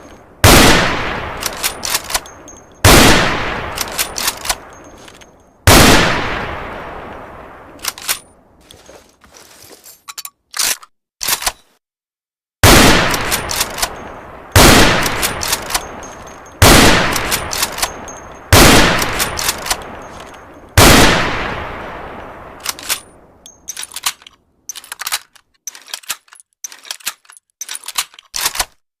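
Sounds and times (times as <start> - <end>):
rifle shots with echo: 0.4 - 4.8, 5.7 - 6.9, 12.6 - 20.1, 20.8 - 22.9
rifle bolt clicking: 1.4 - 2.4, 23.7 - 28.8
metallic clacks of rifle action: 1.4 - 2.8, 3.7 - 5.5, 7.8 - 11.8, 13.1 - 14.2, 15.0 - 18.4, 19.0 - 20.6, 22.6 - 28.8.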